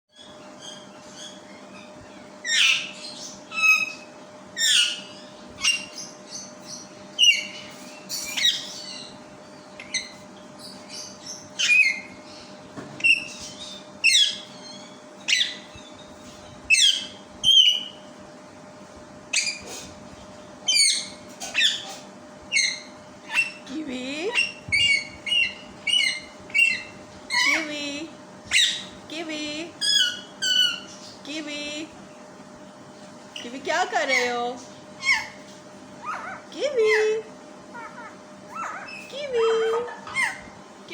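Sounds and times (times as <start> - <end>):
parrot screeching: 24.4 - 27.6, 35.0 - 35.4, 36.0 - 36.4, 37.8 - 39.1.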